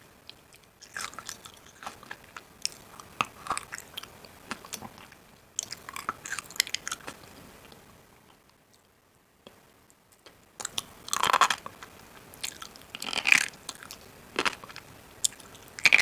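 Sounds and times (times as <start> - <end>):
crisp food crunching: 0.3 - 7.4, 10.6 - 16.0.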